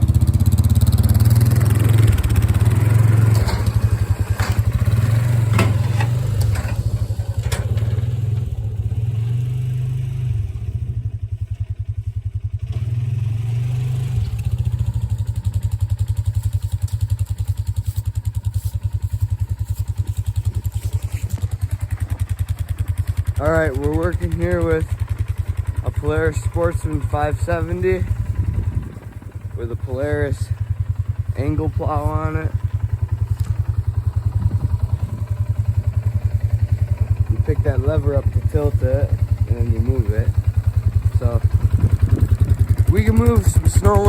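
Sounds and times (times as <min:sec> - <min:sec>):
atv engine revving: 0:00.0 - 0:44.0
sharp knocks and clatter: 0:01.6 - 0:08.4.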